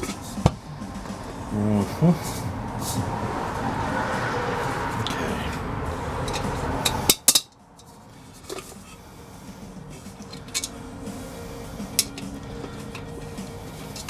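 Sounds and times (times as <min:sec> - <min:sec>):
steady noise: 0:00.0 - 0:14.0.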